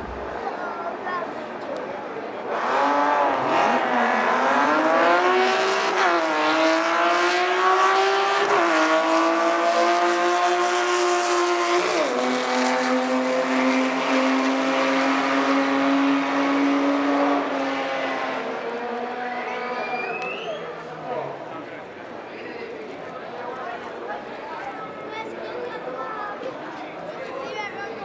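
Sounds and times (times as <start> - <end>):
racing car engine accelerating: 2.5 - 19.8.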